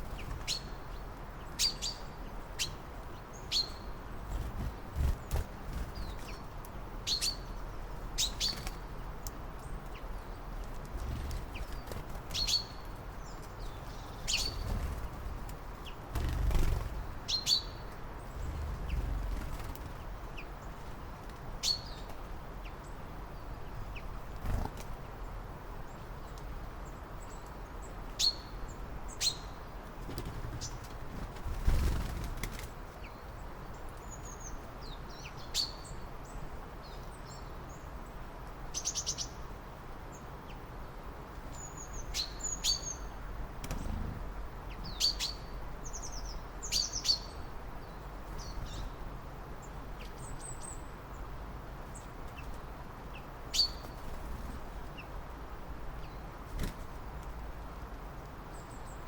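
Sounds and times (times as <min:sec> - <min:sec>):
songbirds chirping: 0:00.0 - 0:59.0
low background rumble: 0:09.6 - 0:21.2, 0:43.3 - 0:45.0.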